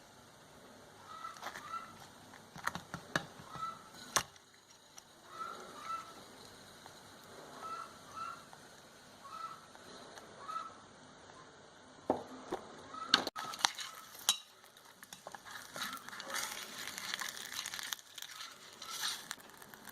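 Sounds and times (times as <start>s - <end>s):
short bird calls: 1.0s - 2.0s, 5.3s - 6.1s, 7.6s - 8.5s, 9.2s - 9.7s, 10.4s - 10.8s.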